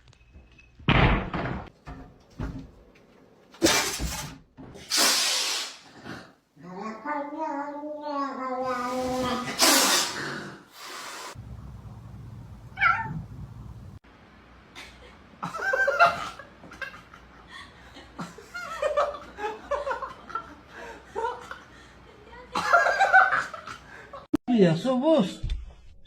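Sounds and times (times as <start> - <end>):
harsh noisy burst: 4.9 - 5.9, 8.8 - 11.4
cat meowing: 12.8 - 13.2
people laughing: 14.8 - 24.3.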